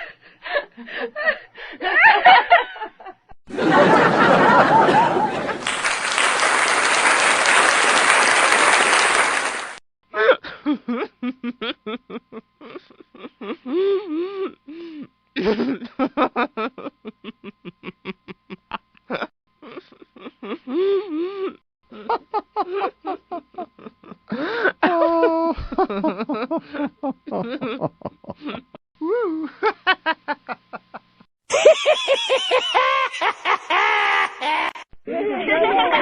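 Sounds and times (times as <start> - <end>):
crowd laughing: 0.0 - 9.8, 29.6 - 36.0
crowd applauding: 3.9 - 9.8
person laughing in choppy bursts: 10.2 - 36.0.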